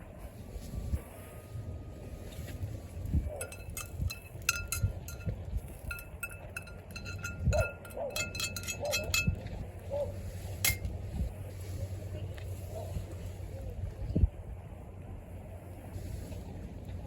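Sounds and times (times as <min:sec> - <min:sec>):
light metallic clinks: 0:03.2 - 0:09.6, 0:10.5 - 0:10.9.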